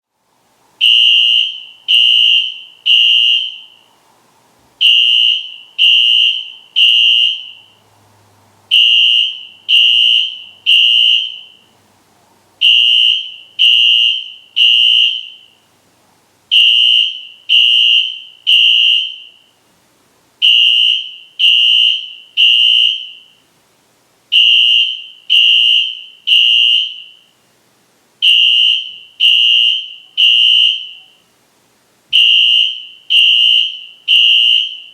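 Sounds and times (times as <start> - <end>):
fire alarm horn blasts: 0.8 - 3.8, 4.8 - 7.8, 8.7 - 11.7, 12.6 - 15.6, 16.5 - 19.6, 20.4 - 23.4, 24.3 - 27.3, 28.2 - 31.2, 32.1 - 34.9.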